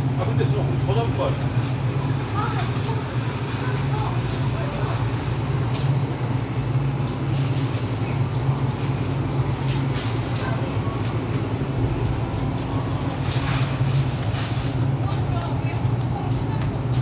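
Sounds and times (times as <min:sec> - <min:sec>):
low machine hum: 0:00.0 - 0:17.0.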